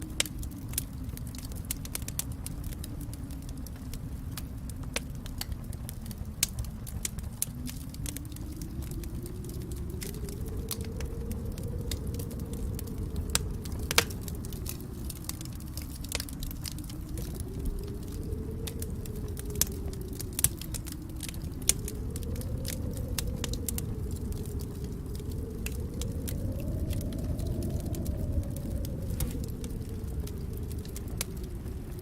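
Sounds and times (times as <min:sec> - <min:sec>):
wood fire crackling: 0:00.0 - 0:32.0.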